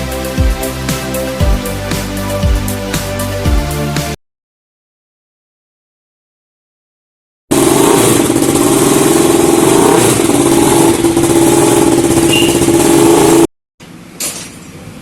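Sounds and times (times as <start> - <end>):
motorcycle engine running: 7.5 - 13.5.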